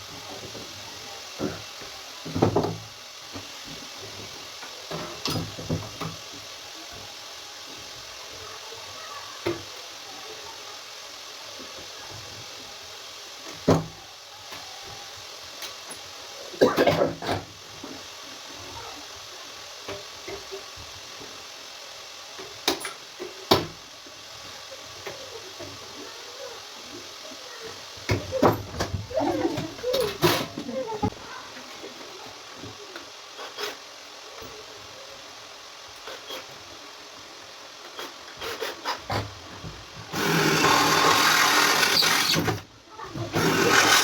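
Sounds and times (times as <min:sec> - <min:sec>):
steady hiss: 0:00.0 - 0:44.0
power tool rubbing metal: 0:40.1 - 0:42.6, 0:43.3 - 0:44.0.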